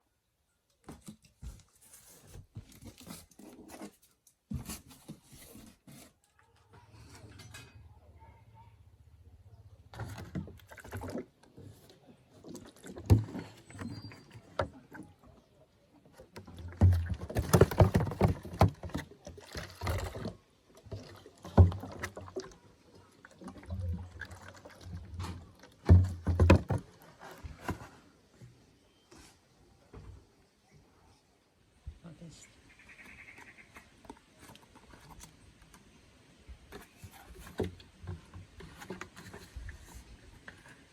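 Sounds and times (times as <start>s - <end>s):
objects being handled: 0.7s - 7.9s, 9.9s - 30.0s, 36.6s - 40.9s.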